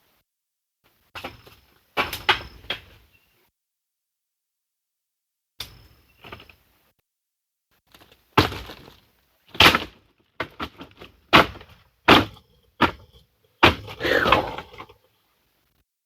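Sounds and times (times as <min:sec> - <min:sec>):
sharp cracking strikes on wood: 0:08.4 - 0:13.0, 0:13.6 - 0:14.8.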